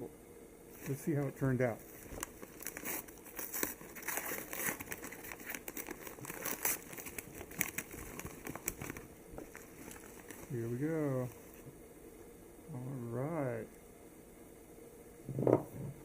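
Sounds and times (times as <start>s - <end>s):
packaging crinkling and rustling: 0.8s - 11.7s.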